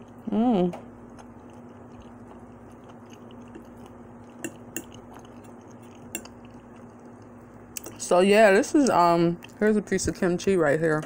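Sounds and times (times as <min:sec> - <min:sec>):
person chewing: 0:00.0 - 0:08.0, 0:09.4 - 0:09.6.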